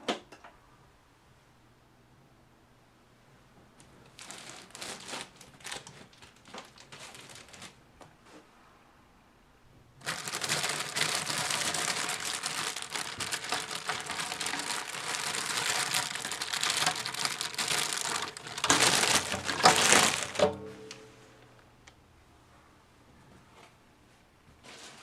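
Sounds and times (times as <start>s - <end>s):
dense crinkling and crackling: 3.8s - 7.9s, 10.0s - 22.0s, 24.5s - 25.0s.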